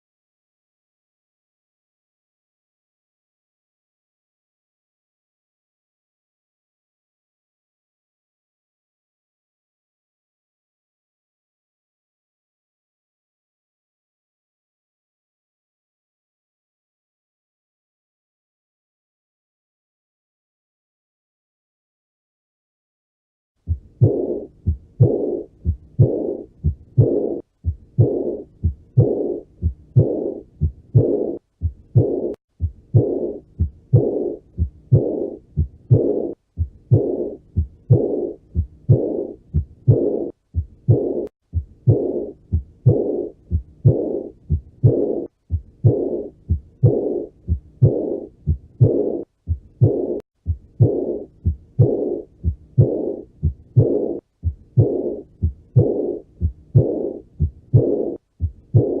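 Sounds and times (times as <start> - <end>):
heartbeat thumps: 23.6 - 59.0
blowing heart murmur: 23.7 - 59.0.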